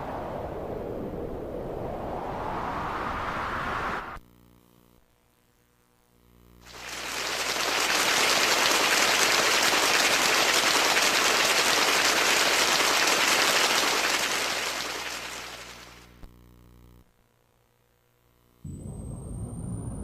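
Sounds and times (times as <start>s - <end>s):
crackling noise rush: 6.6s - 16.2s, 18.6s - 20.0s.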